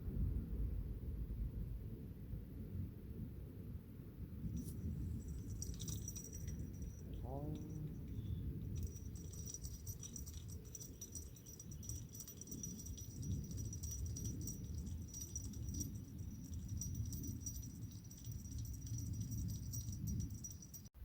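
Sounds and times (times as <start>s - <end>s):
night insects chirping: 4.6s - 20.9s.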